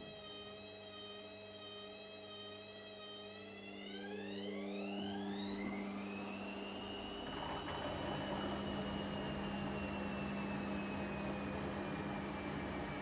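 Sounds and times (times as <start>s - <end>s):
washing machine motor whining: 3.9s - 13.0s.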